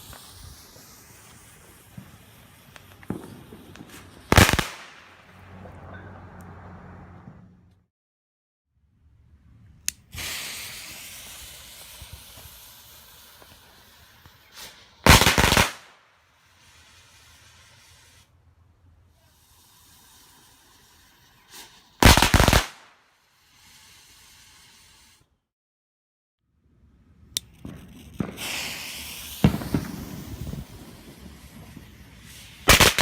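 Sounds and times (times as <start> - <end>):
firecracker burst of cracks: 0.0 - 5.5, 10.1 - 18.3, 19.8 - 23.2, 27.5 - 33.0
fuse hissing: 9.9 - 15.0, 19.1 - 22.0, 23.2 - 25.3.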